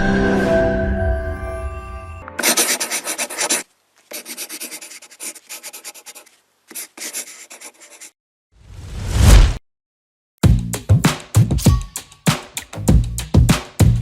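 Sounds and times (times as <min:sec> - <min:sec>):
rapid dry scratching strokes: 0:02.4 - 0:08.2
rising whoosh: 0:08.7 - 0:09.6.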